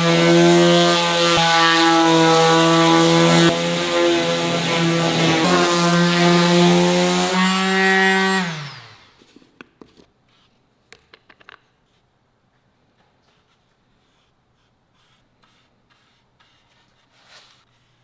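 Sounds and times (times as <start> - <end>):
power tool whining: 0.0 - 9.3.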